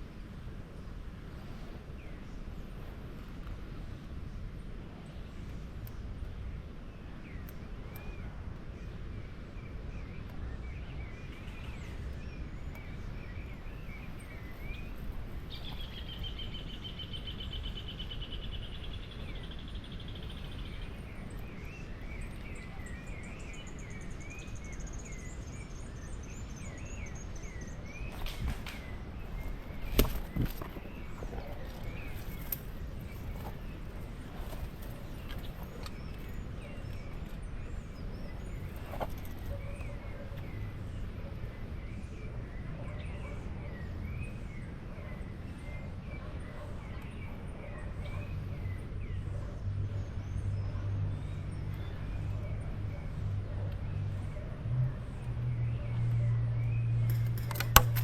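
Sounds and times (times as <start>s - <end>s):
wild birds chirping: 0.0s - 58.0s
handling noise: 28.1s - 37.4s, 57.1s - 58.0s
sharp clicks: 57.1s - 58.0s.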